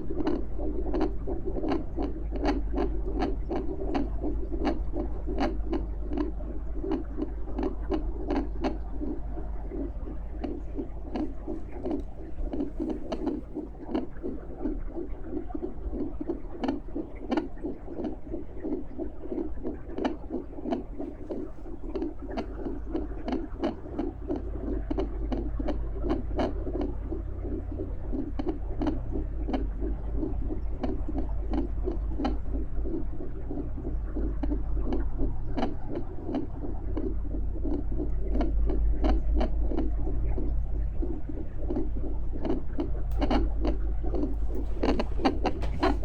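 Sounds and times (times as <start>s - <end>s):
faint clicks: 43.1s - 46.0s
whooshing doppler heartbeat: 44.2s - 46.0s.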